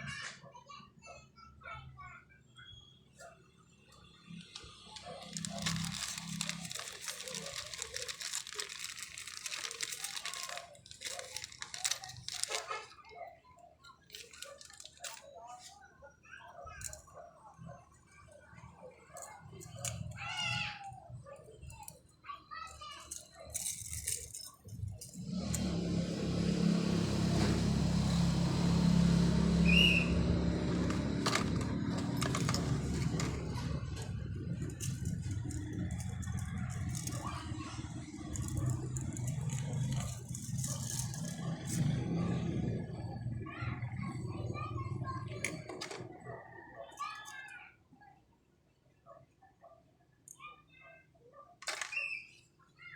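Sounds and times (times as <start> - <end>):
vehicle engine running: 4.7 - 12.8, 25.2 - 45.7
plastic packaging crinkling: 4.8 - 13.2, 14.0 - 15.7, 30.6 - 41.8
rustles and clicks: 4.9 - 13.2, 14.0 - 15.8, 29.8 - 41.9.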